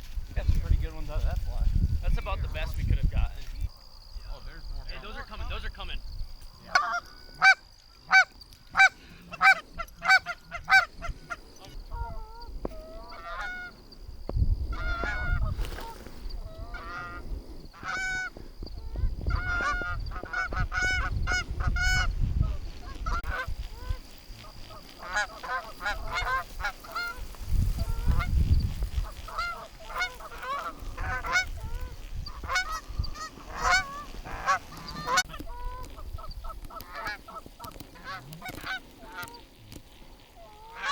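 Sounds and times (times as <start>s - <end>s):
geese honking and clucking: 6.5s - 14.0s, 14.7s - 40.9s.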